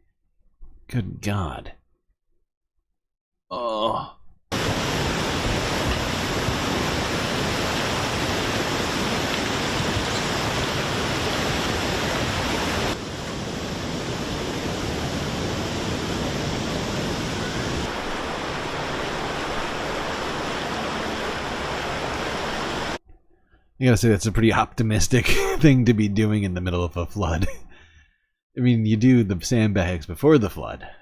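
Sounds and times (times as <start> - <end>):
floodwater rushing: 4.5 - 23.0.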